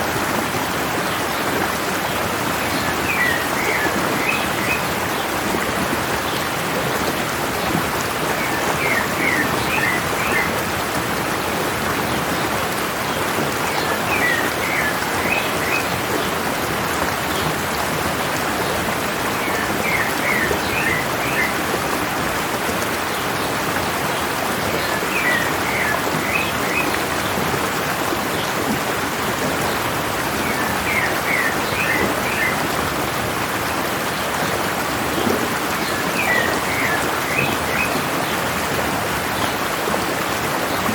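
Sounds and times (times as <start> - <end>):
stream water running: 0.0 - 40.9
songbird chirping: 35.2 - 38.1.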